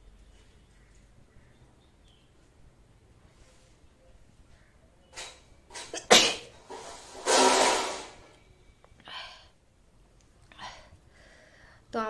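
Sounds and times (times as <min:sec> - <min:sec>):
catching breaths: 0:10.5 - 0:11.9.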